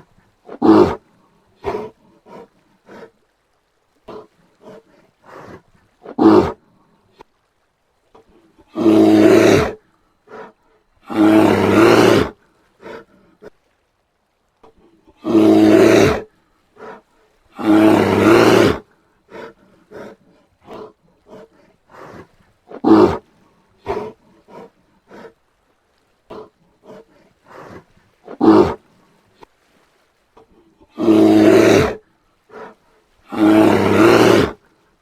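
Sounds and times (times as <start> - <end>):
bear grunts: 0.0 - 1.0, 1.6 - 3.2, 4.0 - 6.6, 8.2 - 13.6, 14.7 - 23.2, 23.8 - 25.4, 26.3 - 28.8, 30.5 - 34.6
bear roaring: 0.0 - 1.0, 1.6 - 3.1, 4.1 - 6.6, 8.7 - 13.0, 15.2 - 23.2, 23.8 - 25.4, 26.3 - 28.8, 30.9 - 34.6.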